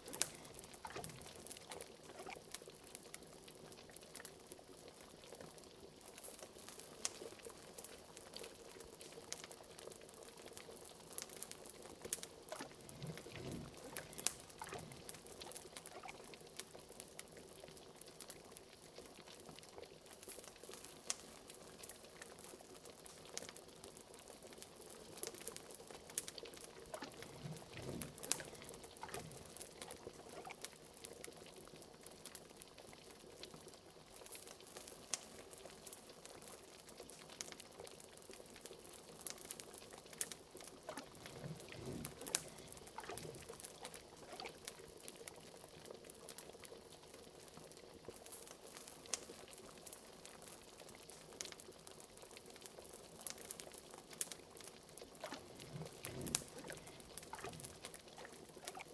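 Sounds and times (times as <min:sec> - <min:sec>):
liquid bubbling: 0:00.0 - 0:05.6, 0:06.4 - 0:17.0, 0:24.4 - 0:32.0, 0:38.3 - 0:47.2, 0:50.6 - 0:58.9
small sharp pops and crackles: 0:00.0 - 0:58.9.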